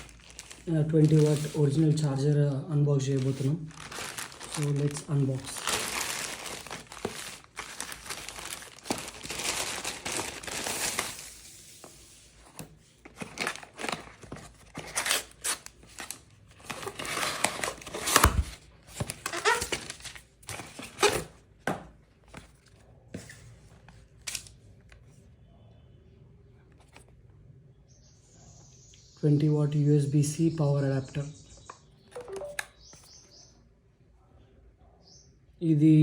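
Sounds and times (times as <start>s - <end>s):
packaging rustling and crinkling: 0.0s - 21.4s.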